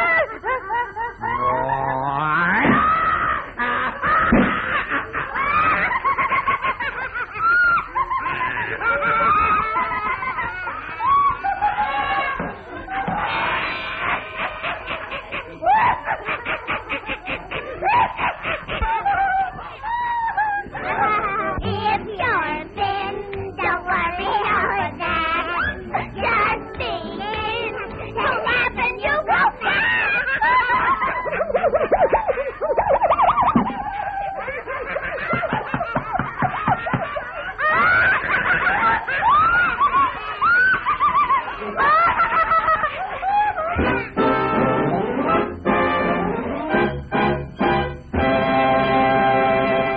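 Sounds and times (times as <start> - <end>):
cartoon voice cackling laughter: 0.0 - 21.6, 27.5 - 44.2
squeaky wavering cries: 7.0 - 35.9, 36.8 - 44.1.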